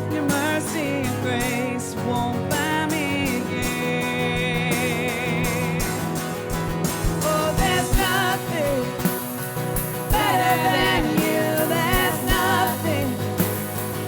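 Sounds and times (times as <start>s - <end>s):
person singing: 0.0s - 6.3s, 7.2s - 14.0s
worship band playing: 0.0s - 14.0s
steady low drum beat: 4.4s - 14.0s.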